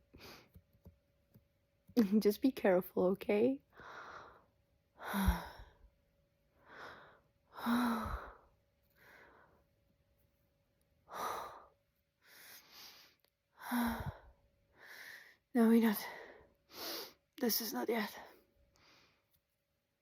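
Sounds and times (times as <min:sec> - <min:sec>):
woman gasping and sighing: 0:05.0 - 0:05.8, 0:06.7 - 0:09.1, 0:13.6 - 0:15.0.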